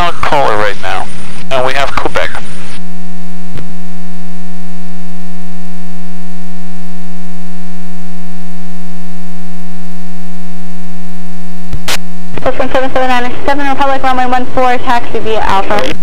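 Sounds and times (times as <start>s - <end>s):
electrical radio buzz: 0.0s - 16.0s.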